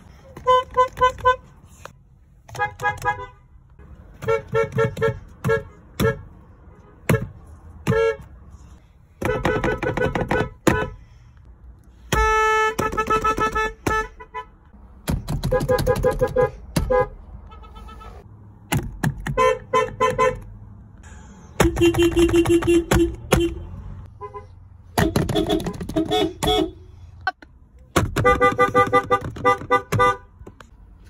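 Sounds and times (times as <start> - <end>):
car horns honking: 0.3 - 1.6, 2.5 - 8.6, 9.2 - 11.1, 12.0 - 14.7, 15.3 - 18.3, 19.2 - 20.6, 21.6 - 27.4, 28.0 - 30.6.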